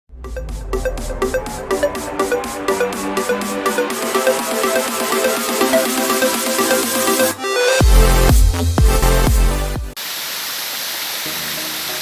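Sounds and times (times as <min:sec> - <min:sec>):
heavy bass drop: 0:00.1 - 0:04.2.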